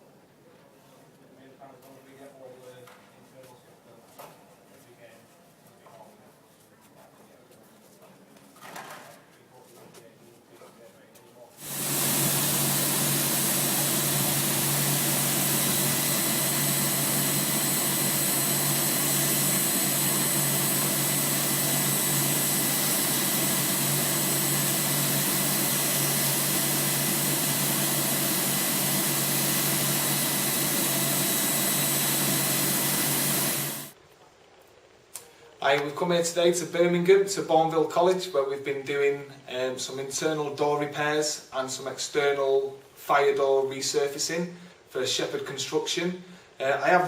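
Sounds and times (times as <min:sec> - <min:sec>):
electric motor running: 0:11.6 - 0:34.0.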